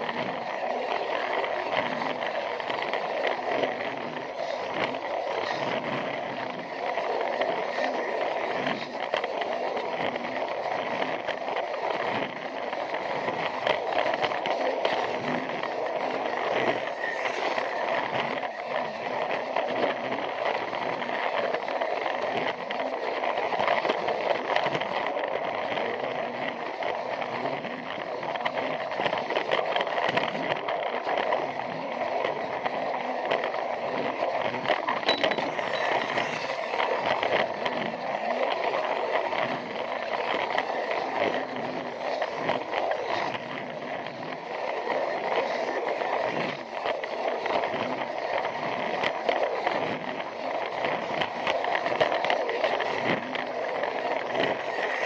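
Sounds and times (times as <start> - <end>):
wheels clattering on plastic track: 0.0 - 55.0
toy train motor whirring: 15.2 - 20.4, 32.0 - 43.2, 44.6 - 55.0.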